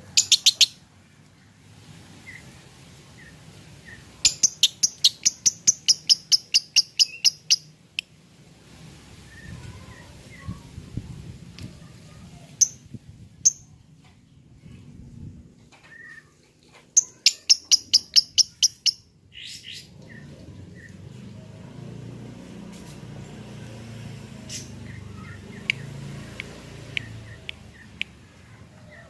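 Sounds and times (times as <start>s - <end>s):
lovebird chirping: 0.0s - 0.8s, 3.1s - 8.1s, 12.6s - 13.8s, 17.0s - 20.9s, 24.5s - 29.0s.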